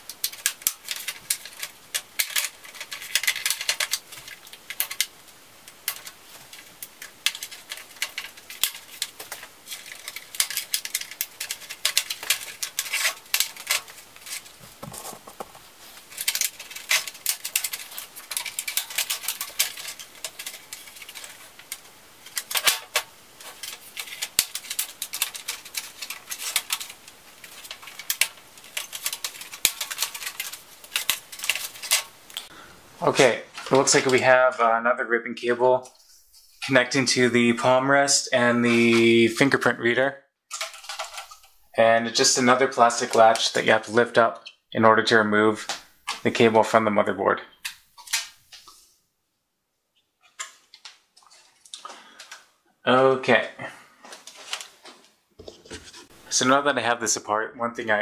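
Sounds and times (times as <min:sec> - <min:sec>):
plastic clicks and scraping: 0:00.0 - 0:32.5, 0:40.5 - 0:41.6.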